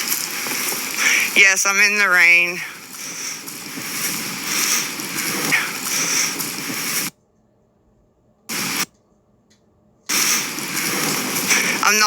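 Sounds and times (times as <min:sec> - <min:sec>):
rain hiss on microphone: 0:00.0 - 0:07.1, 0:08.5 - 0:08.9, 0:10.1 - 0:12.0.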